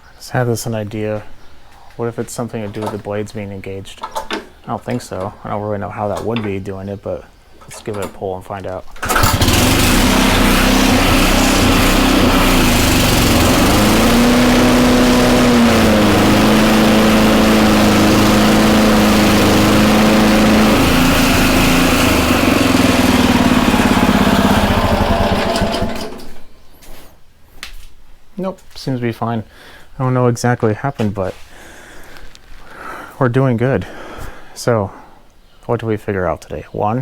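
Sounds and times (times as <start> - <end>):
lawn mower engine running: 9.0 - 26.6.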